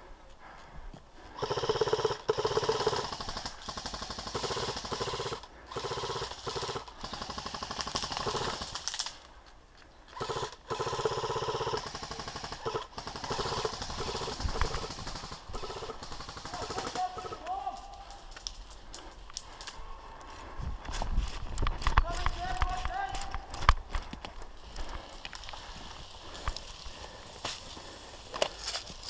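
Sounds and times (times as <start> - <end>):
airsoft rifle full-auto bursts: 1.4 - 9.0, 10.1 - 17.6.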